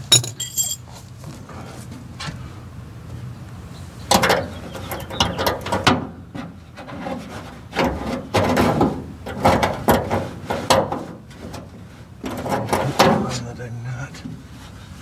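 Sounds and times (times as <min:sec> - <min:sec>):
metal hardware knocking and clattering: 0:00.0 - 0:00.9.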